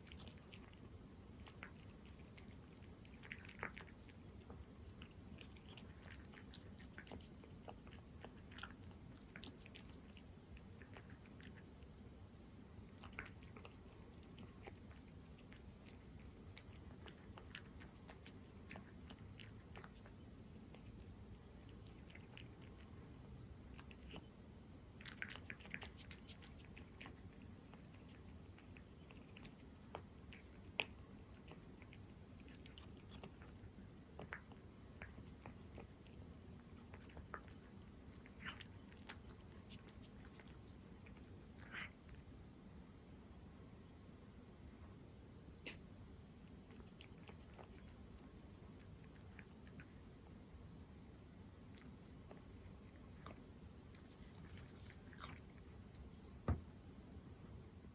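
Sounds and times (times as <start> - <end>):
cat chewing wet food: 0.0 - 42.6, 45.5 - 56.9.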